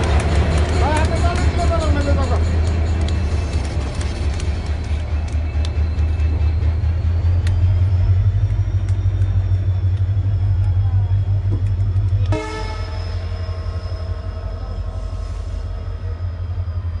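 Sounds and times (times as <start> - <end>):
train rumbling: 0.0 - 17.0
locomotive horn blast: 12.2 - 13.4.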